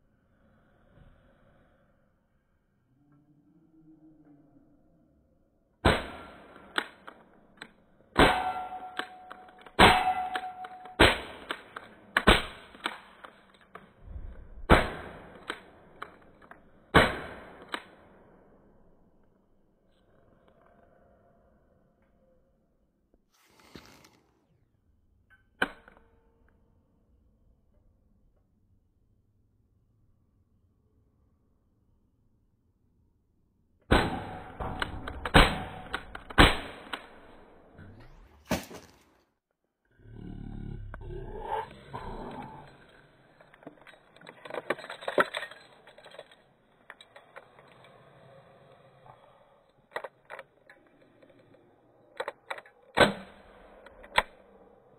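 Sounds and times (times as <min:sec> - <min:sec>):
pistol cracks: 0:05.9 - 0:13.9, 0:33.9 - 0:37.4.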